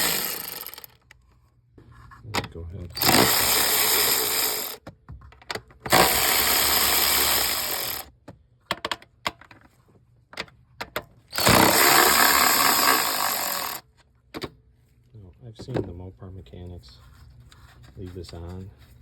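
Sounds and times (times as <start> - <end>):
power ratchet spinning: 0.0 - 1.0, 3.0 - 4.8, 5.9 - 8.1, 11.4 - 13.8.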